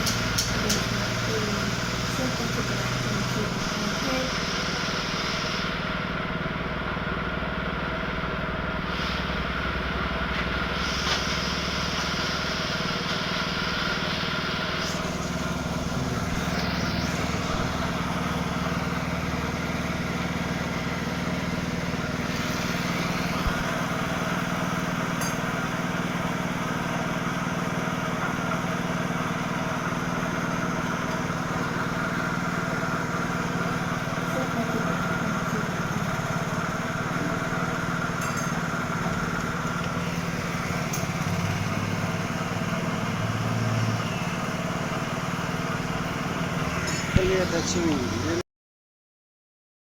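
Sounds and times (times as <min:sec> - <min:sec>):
motorcycle engine running: 0:11.6 - 0:48.4.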